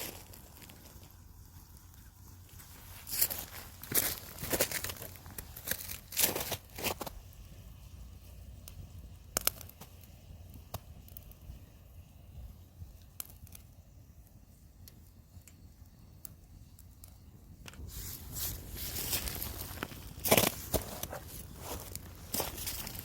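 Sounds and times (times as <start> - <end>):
campfire crackling: 0.0 - 23.0
rustling noise: 17.7 - 23.0.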